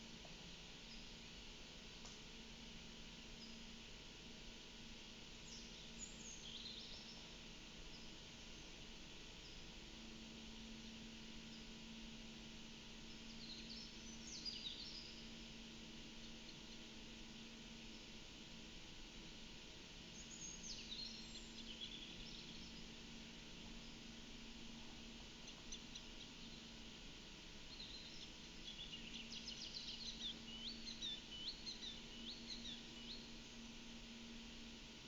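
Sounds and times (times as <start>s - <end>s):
low steady hum: 0.0s - 35.0s
small bird singing: 5.4s - 8.7s, 13.0s - 15.5s, 20.1s - 26.8s, 27.6s - 34.2s.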